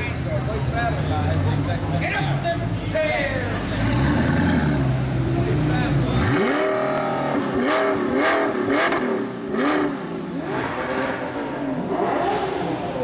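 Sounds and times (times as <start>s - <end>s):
sports car engine revving: 3.4s - 13.0s.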